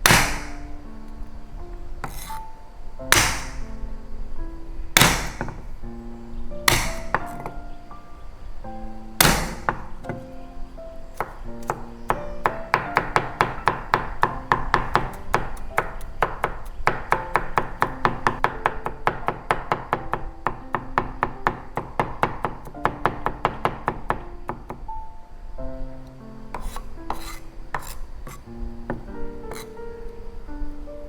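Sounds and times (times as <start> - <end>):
knife chopping on wooden board: 0.0 - 0.7, 2.0 - 2.4, 3.1 - 3.8, 5.0 - 5.6, 6.7 - 7.6, 9.2 - 10.2, 11.2 - 20.1, 26.6 - 29.7
soft instrumental music: 0.0 - 31.0.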